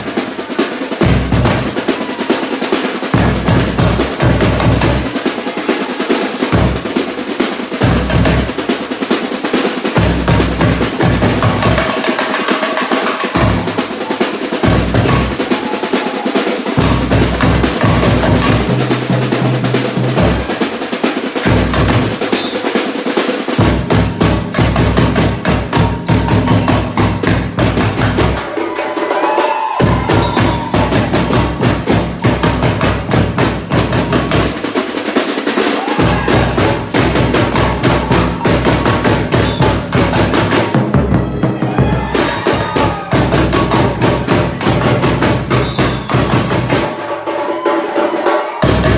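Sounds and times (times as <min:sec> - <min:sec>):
snare drums and hand percussion: 0:00.0 - 0:48.9
bass drums: 0:01.0 - 0:01.9, 0:03.2 - 0:05.2, 0:06.5 - 0:07.0, 0:07.8 - 0:08.7, 0:10.0 - 0:11.9, 0:13.4 - 0:15.6, 0:16.8 - 0:20.6, 0:21.4 - 0:22.5, 0:23.6 - 0:28.4, 0:29.8 - 0:34.7, 0:36.0 - 0:46.9, 0:48.6 - 0:48.9.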